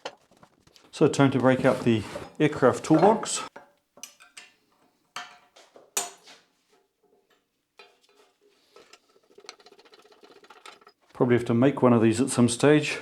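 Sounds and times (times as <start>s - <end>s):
metal wrenches clinking: 2.2s - 4.6s, 7.8s - 11.1s.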